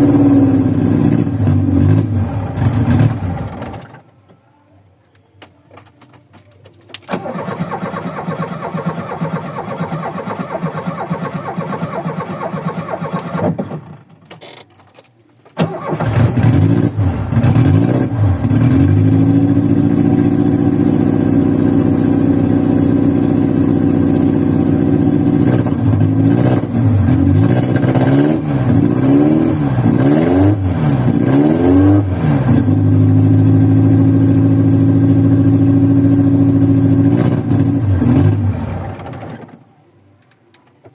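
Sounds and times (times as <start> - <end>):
engine revving: 0.0 - 3.9, 15.6 - 39.4
car engine cranking: 5.8 - 20.0, 36.7 - 39.6.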